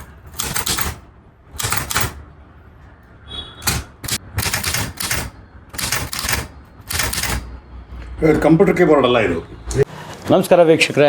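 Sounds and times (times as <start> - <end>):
typewriter keys clacking: 0.0 - 1.0, 1.6 - 2.2, 3.6 - 7.5
typewriter bell ringing: 0.3 - 1.0, 1.6 - 2.2, 3.6 - 7.4.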